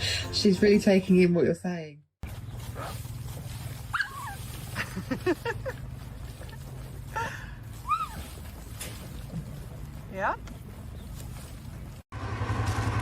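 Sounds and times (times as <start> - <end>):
dog whining: 3.9 - 4.5, 7.8 - 8.4.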